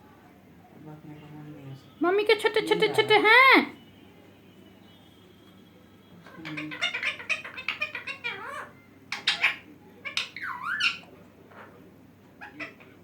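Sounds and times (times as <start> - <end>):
parrot chattering and squawking: 6.3 - 13.0.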